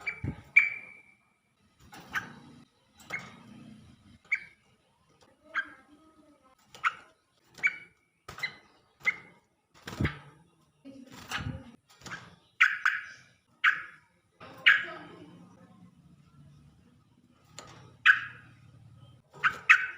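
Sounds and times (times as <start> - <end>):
bird chirping phrases: 5.3 - 9.4, 12.4 - 17.0.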